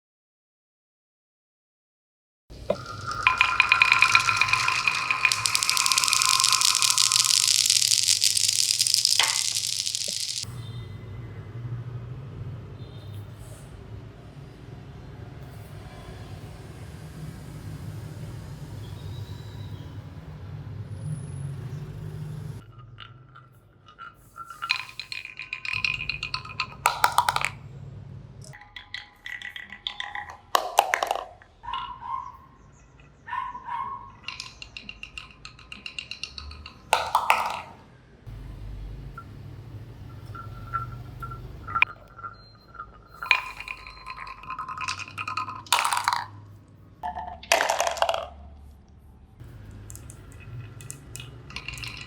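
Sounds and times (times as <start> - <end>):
marbles clicking and clinking: 2.7 - 10.5, 24.7 - 27.6, 34.3 - 37.8, 43.1 - 46.4, 49.9 - 52.0
marbles rolling on wooden track: 2.7 - 10.5, 24.5 - 27.6, 34.3 - 37.8, 43.1 - 46.4, 47.0 - 48.4, 50.8 - 52.0
short ringing tones: 2.8 - 10.4.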